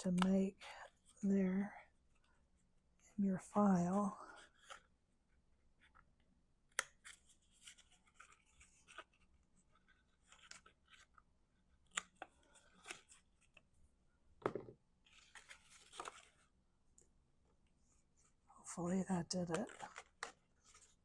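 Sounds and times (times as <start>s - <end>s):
paper rustling: 7.0s - 11.2s, 11.8s - 13.6s, 15.0s - 16.5s, 19.5s - 21.0s
knock: 14.4s - 14.7s.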